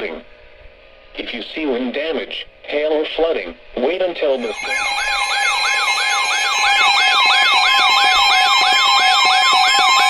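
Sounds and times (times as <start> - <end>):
electronic alert tone sweeping: 4.4 - 10.0.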